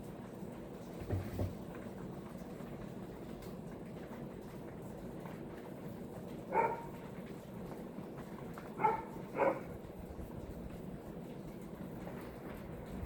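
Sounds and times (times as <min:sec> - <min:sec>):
dog barking: 0:06.5 - 0:07.0, 0:08.8 - 0:09.8.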